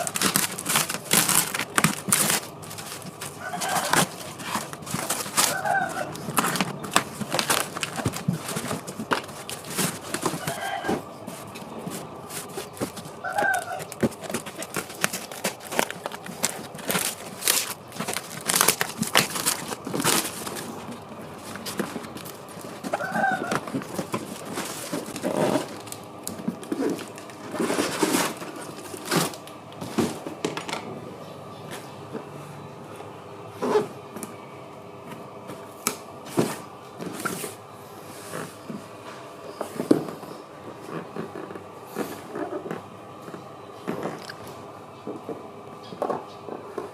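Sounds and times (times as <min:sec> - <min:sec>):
packaging crinkling and tearing: 0:00.0 - 0:29.5.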